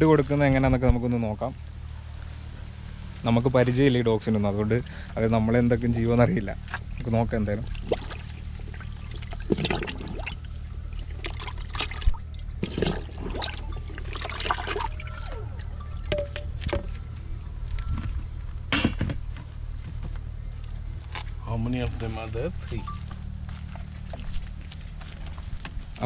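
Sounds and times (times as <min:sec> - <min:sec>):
steady low hum: 0:00.0 - 0:26.0.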